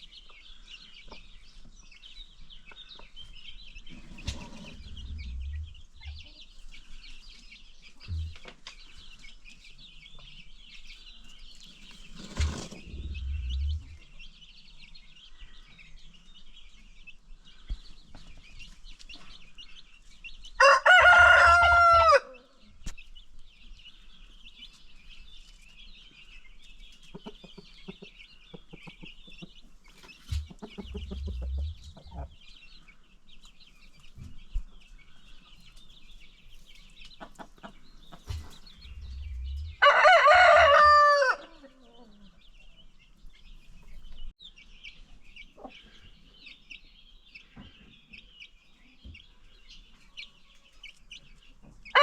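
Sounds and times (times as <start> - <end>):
hens clucking: 2.6 - 9.6, 11.5 - 14.2, 20.6 - 22.4, 26.7 - 42.8
rooster crowing: 20.6 - 22.4, 39.4 - 41.6.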